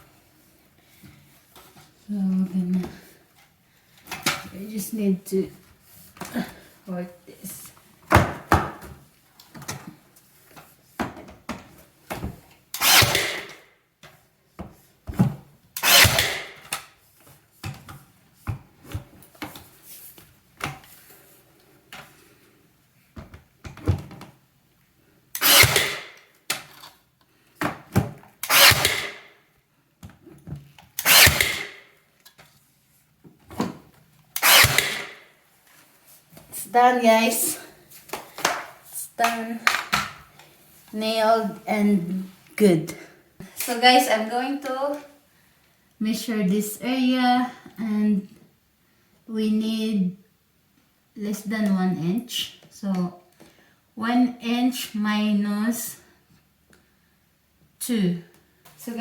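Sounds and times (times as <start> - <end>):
nail gun shots: 12.8 - 13.6, 15.8 - 16.7, 25.4 - 26.2, 28.4 - 29.3, 31.0 - 31.8, 34.4 - 35.2.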